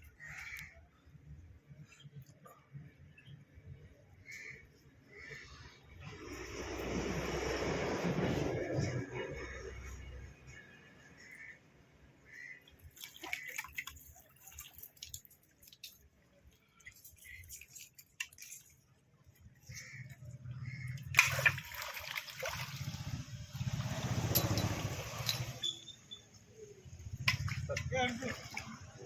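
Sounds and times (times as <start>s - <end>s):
faint drips and clicks: 12.6s - 21.4s, 23.9s - 26.3s
seawater splashing and sloshing: 12.6s - 29.0s.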